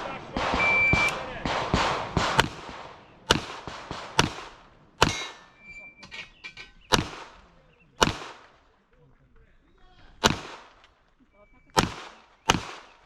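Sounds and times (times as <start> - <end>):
handgun shots echoing: 0.3 - 5.5, 6.9 - 7.4, 8.0 - 8.6, 10.2 - 11.0, 11.8 - 13.0.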